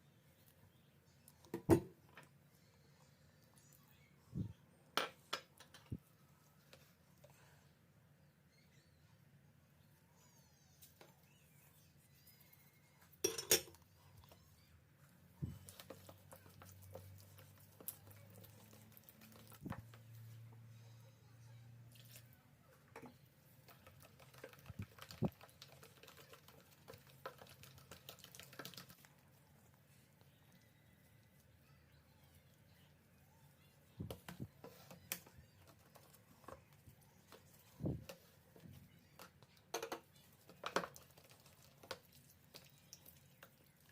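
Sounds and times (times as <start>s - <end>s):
faint low hum: 0.0s - 43.9s
dishes and utensils clinking: 13.2s - 13.8s.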